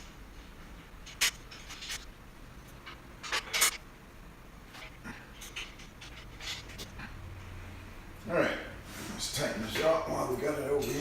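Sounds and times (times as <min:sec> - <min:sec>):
light scraping and rubbing: 0:04.7 - 0:07.0.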